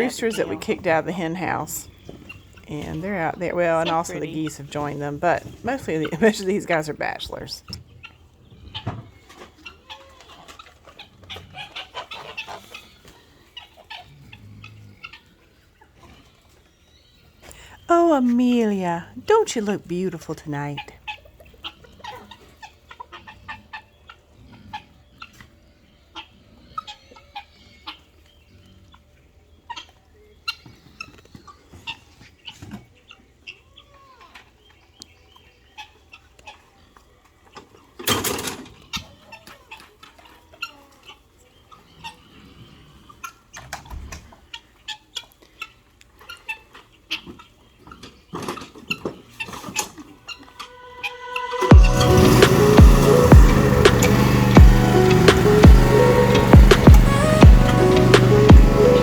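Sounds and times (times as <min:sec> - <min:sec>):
chickens clucking: 0:00.0 - 0:17.8, 0:18.6 - 0:59.0
loud noisy burst: 0:51.6 - 0:59.0.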